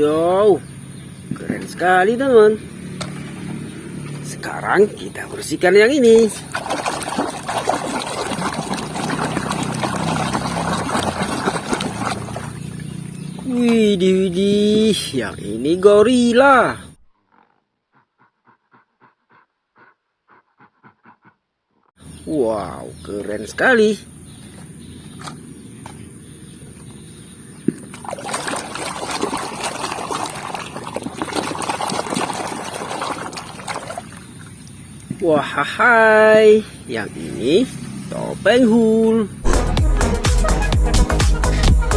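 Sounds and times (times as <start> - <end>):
water running and splashing: 5.9 - 13.8, 27.8 - 35.2.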